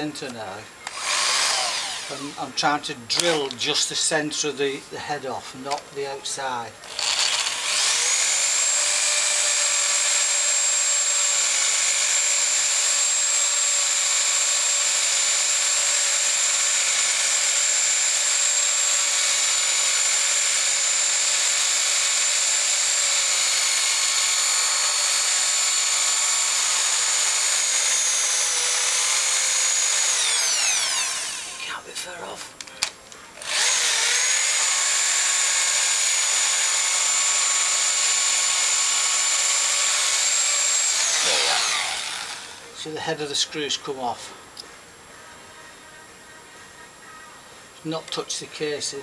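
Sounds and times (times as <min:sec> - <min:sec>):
electric drill whining: 0:00.8 - 0:02.5, 0:03.2 - 0:03.6, 0:06.8 - 0:31.8, 0:33.4 - 0:42.7.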